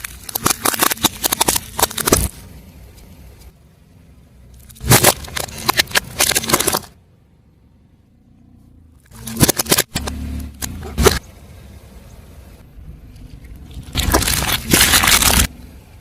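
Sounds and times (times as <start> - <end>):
tyre crushing brittle objects: 0.0 - 2.5, 4.6 - 7.0, 9.0 - 11.2, 13.6 - 15.5
low rumble: 10.0 - 16.0.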